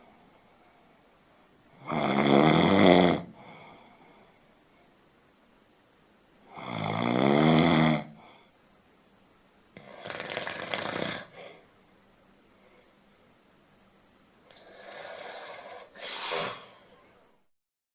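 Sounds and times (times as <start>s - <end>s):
breathy noisy breath: 3.3s - 4.9s, 9.8s - 11.7s, 14.5s - 17.2s
rattling snore: 9.8s - 11.4s.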